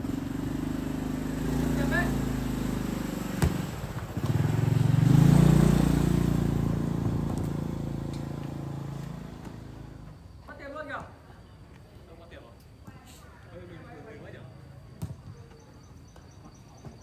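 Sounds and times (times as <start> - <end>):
vehicle engine passing by: 0.0 - 10.1.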